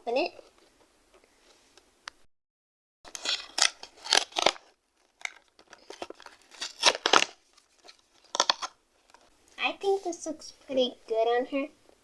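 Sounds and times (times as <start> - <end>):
packaging rasping: 3.1 - 9.2.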